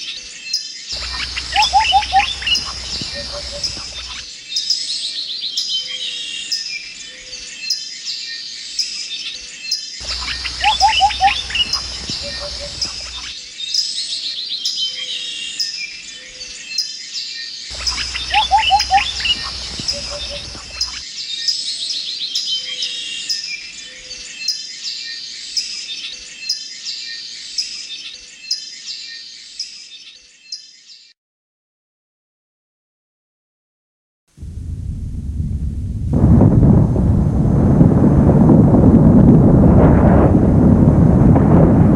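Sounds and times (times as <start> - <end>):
small birds chirping: 0.0 - 31.2
low bird trills: 1.0 - 4.3, 10.0 - 13.3, 17.7 - 21.0.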